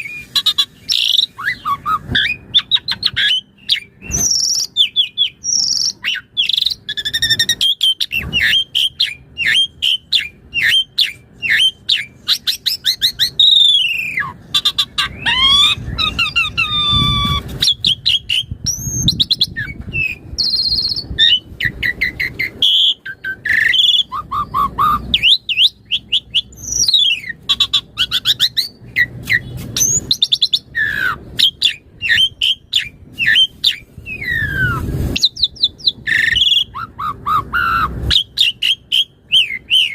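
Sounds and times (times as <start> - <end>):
starling singing: 0.0 - 39.9.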